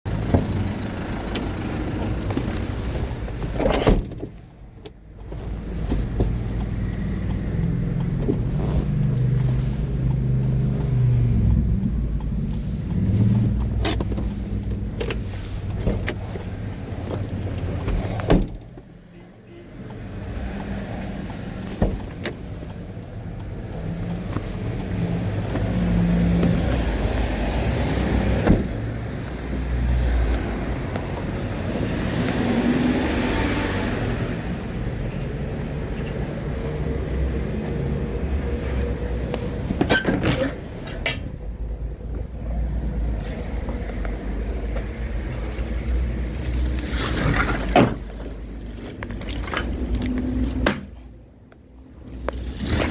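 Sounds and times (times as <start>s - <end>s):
vehicle engine running: 0.1s - 3.0s.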